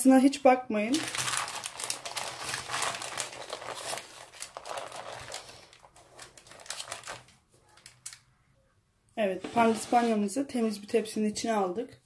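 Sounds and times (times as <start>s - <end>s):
baking paper crinkling: 0.9s - 8.2s, 9.4s - 10.8s.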